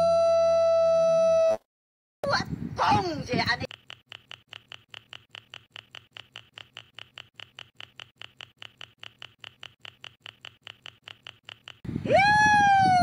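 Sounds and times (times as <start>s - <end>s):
rapid sharp ticking: 3.6s - 11.9s.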